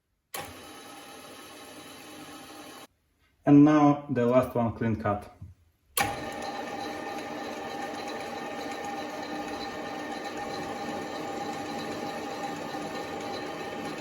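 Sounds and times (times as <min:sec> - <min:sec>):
lathe mechanical whine: 0:00.4 - 0:02.9, 0:06.0 - 0:14.0.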